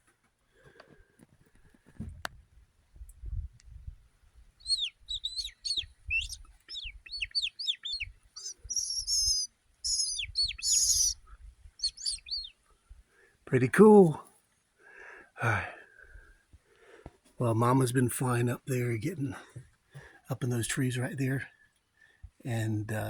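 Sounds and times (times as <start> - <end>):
small birds chirping: 4.3 - 14.7.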